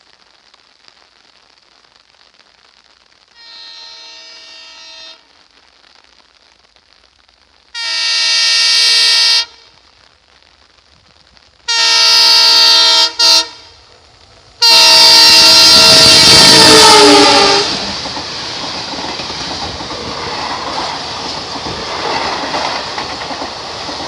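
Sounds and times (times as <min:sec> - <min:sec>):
locomotive air horn blasts: 0:03.4 - 0:05.3, 0:07.8 - 0:09.7, 0:11.7 - 0:13.8, 0:14.6 - 0:17.8.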